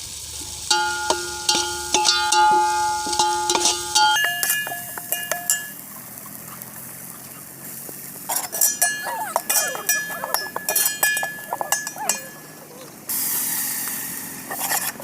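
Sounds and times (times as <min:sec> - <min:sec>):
metal spoon scraping a metal pan: 0:00.4 - 0:05.8, 0:08.3 - 0:12.6.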